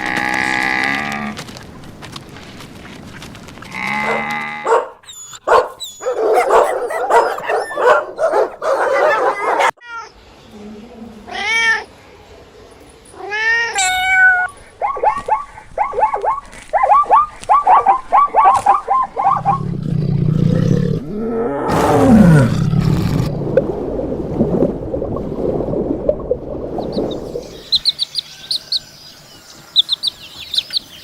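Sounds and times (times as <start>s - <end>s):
low rough animal call: 3.7s - 4.8s
cat-like meowing cries: 9.0s - 10.2s, 13.2s - 14.6s.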